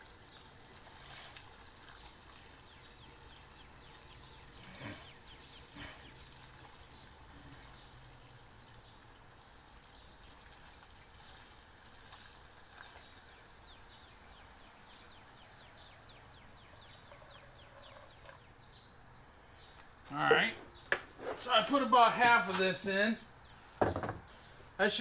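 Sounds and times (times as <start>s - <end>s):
gasoline trickling into fuel tank: 0.0s - 15.4s.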